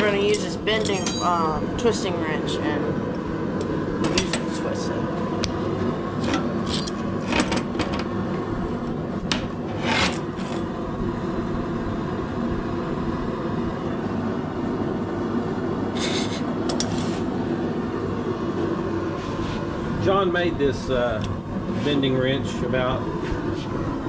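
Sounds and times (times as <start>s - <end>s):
forge running: 0.0s - 24.0s
wrench scraping and clicking on steel: 6.2s - 7.6s, 9.7s - 10.6s, 16.0s - 17.2s.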